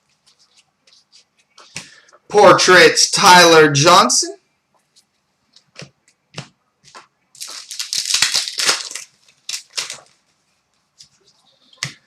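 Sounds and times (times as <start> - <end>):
wrapper crinkling and tearing: 7.3 - 10.3.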